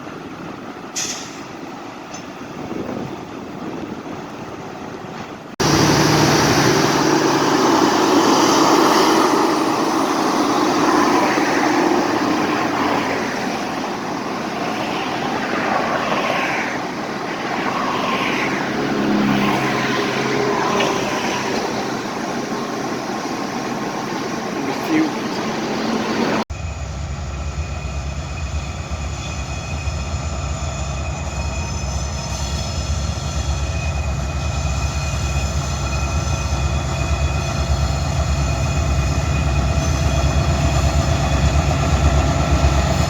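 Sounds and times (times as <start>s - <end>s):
diesel locomotive passing: 0.0s - 43.0s
wheel and rail noise: 0.0s - 43.0s.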